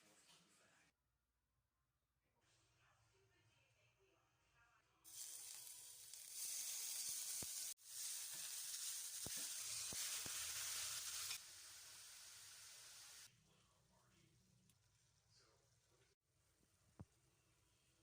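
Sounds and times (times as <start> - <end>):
food sizzling in a hot pan: 5.1 - 13.3.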